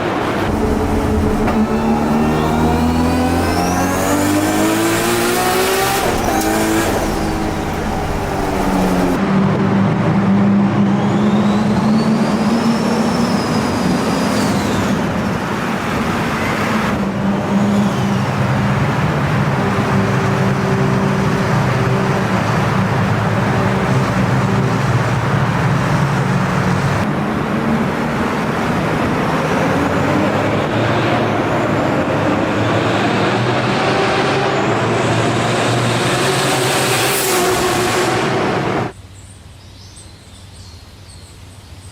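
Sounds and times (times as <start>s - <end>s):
car engine running: 0.2s - 9.2s
high whistle: 10.9s - 14.5s.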